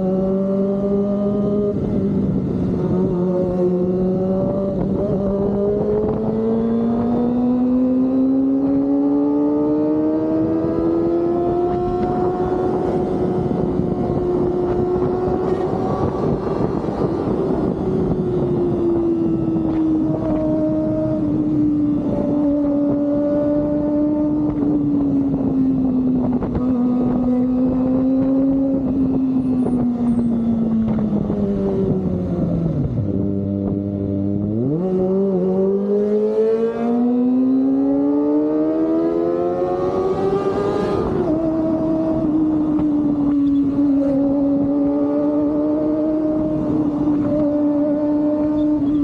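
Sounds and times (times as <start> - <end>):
motorcycle engine revving: 0.0 - 49.0.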